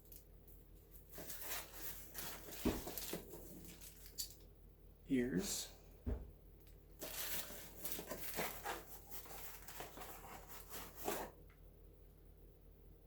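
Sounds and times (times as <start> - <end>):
packaging rustling: 1.0 - 4.4, 7.0 - 11.4.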